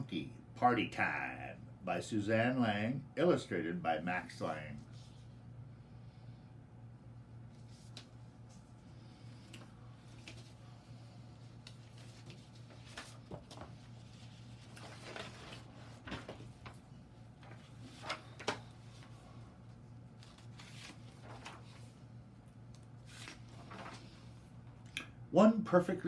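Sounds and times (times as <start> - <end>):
low electrical hum: 0.0 - 26.0
book pages turning: 7.5 - 8.8, 9.4 - 10.8, 11.4 - 24.5.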